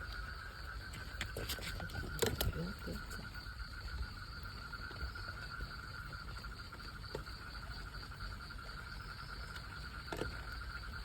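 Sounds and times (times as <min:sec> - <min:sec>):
night insects chirring: 0:00.0 - 0:11.0.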